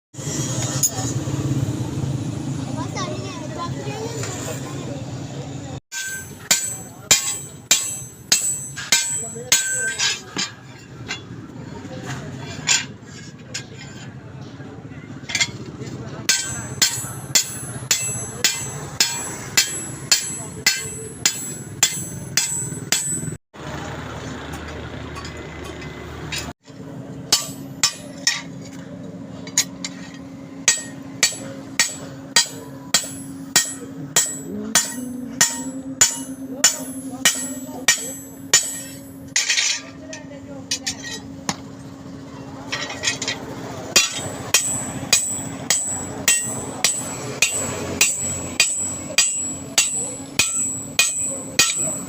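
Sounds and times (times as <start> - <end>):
hammer striking steel on anvil: 5.9 - 11.4, 15.2 - 23.4, 25.1 - 28.8, 29.4 - 41.8, 42.7 - 52.0.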